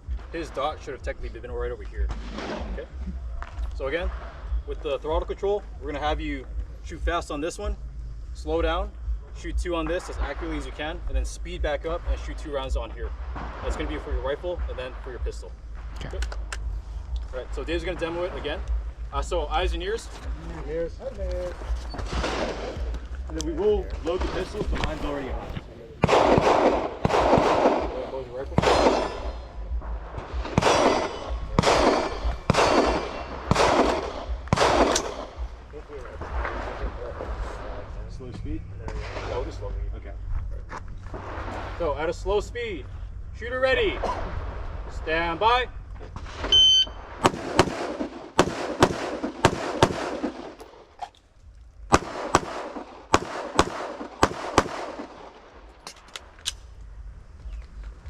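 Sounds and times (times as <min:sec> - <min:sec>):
gunshots with long echo: 0:02.0 - 0:03.0, 0:22.0 - 0:23.0, 0:24.0 - 0:38.1, 0:46.2 - 0:51.0, 0:51.9 - 0:55.8
pistol shots: 0:02.0 - 0:03.0, 0:22.0 - 0:23.1, 0:24.0 - 0:36.6, 0:46.2 - 0:51.0, 0:51.9 - 0:56.6
rifle shots: 0:02.0 - 0:03.0, 0:22.0 - 0:23.0, 0:24.0 - 0:37.9, 0:46.2 - 0:51.0, 0:51.9 - 0:56.4.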